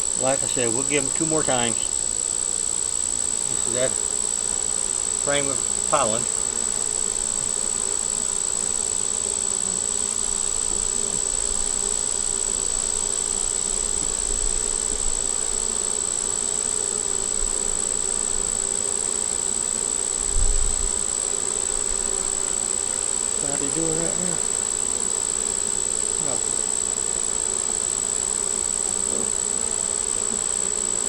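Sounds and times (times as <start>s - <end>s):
bees buzzing: 0.0s - 31.0s.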